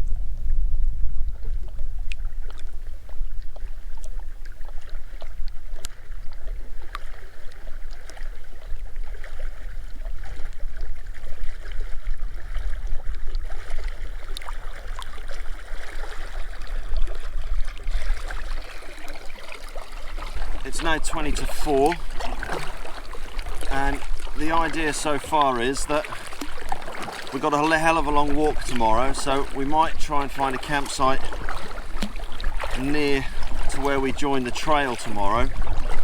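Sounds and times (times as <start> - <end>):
paddle splashing water: 1.2 - 36.0
wind buffeting microphone: 20.0 - 36.0.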